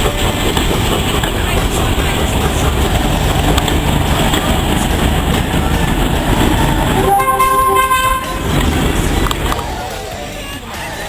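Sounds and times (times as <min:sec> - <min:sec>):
train rumbling: 0:00.0 - 0:11.0
train whistle: 0:06.8 - 0:08.6.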